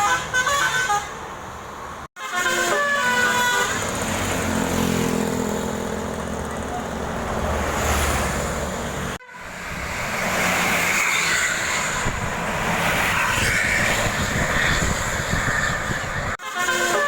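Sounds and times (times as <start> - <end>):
road noise: 0.0 - 17.0
bus engine rumble: 2.7 - 16.4.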